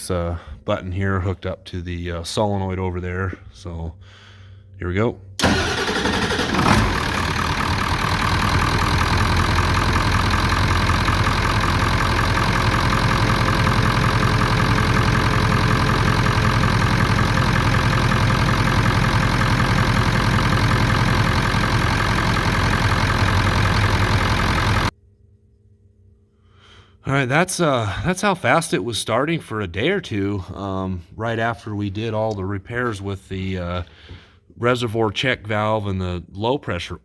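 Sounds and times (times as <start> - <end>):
diesel engine idling: 5.4 - 24.9.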